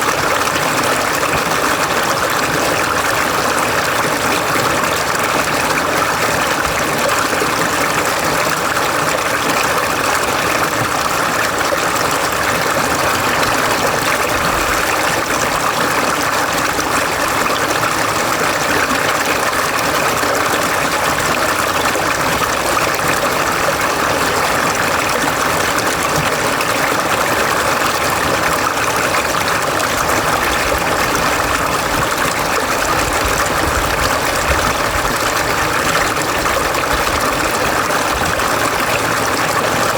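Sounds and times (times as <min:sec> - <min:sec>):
stream rushing water: 0:00.0 - 0:39.9.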